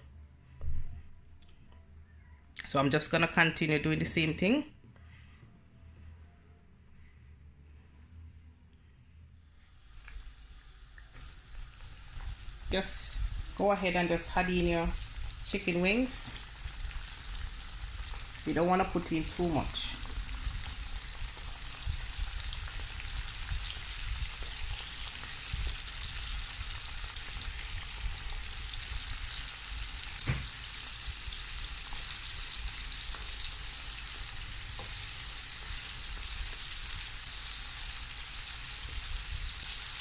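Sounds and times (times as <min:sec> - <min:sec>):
chicken deep-frying in oil: 0:09.8 - 0:40.0.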